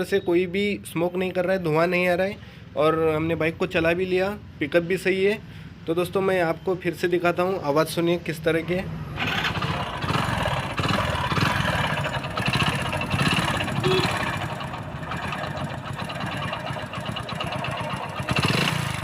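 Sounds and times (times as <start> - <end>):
motorcycle engine with mechanical noise: 9.1 - 19.0.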